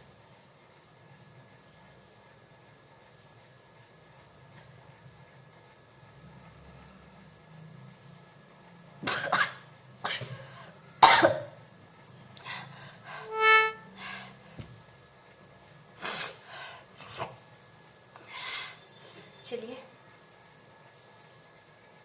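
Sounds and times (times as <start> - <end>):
woman coughing: 11.0 - 11.5.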